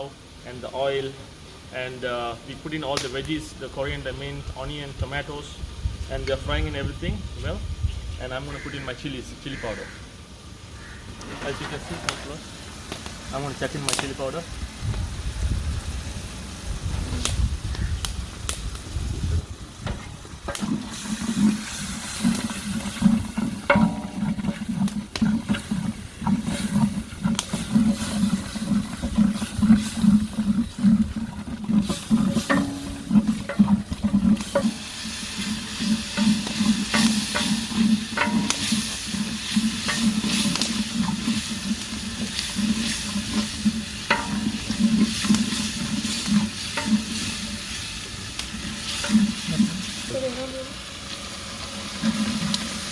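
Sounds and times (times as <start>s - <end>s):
food sizzling in oil: 19.5s - 52.9s
spoon stirring and scraping pot: 20.5s - 50.0s.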